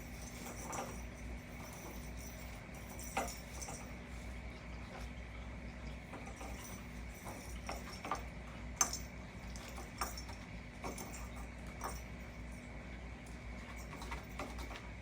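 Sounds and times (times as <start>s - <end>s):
cat toy clicking and clattering: 0.0s - 4.0s, 6.0s - 12.6s, 13.3s - 15.0s.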